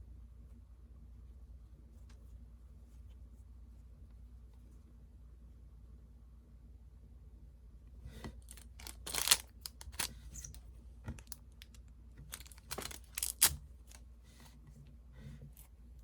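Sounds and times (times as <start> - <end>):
packaging rustling and crinkling: 8.4 - 10.5, 12.3 - 14.0.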